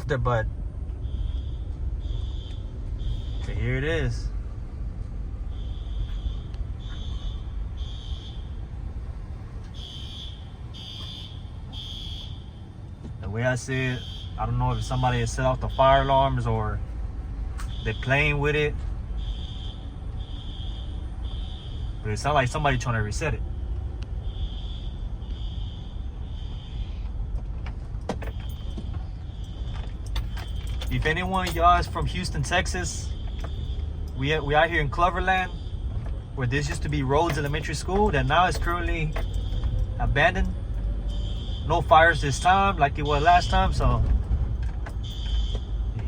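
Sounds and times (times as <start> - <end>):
steady low rumble: 0.0 - 11.8, 12.6 - 46.0
fire alarm horns beeping: 0.2 - 4.2, 5.3 - 12.8, 13.5 - 16.6, 17.6 - 27.3, 28.2 - 44.3, 44.9 - 46.0.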